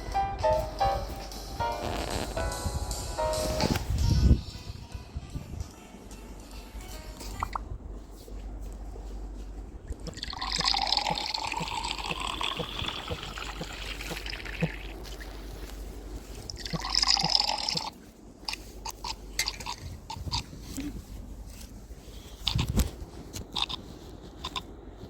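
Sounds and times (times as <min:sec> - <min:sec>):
liquid running: 0:10.1 - 0:15.6, 0:16.5 - 0:17.9.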